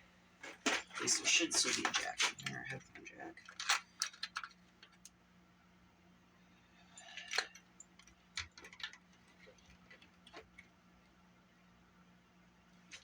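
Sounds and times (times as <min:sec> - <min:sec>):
small electronic parts rattling: 0:00.4 - 0:05.2, 0:06.9 - 0:10.8.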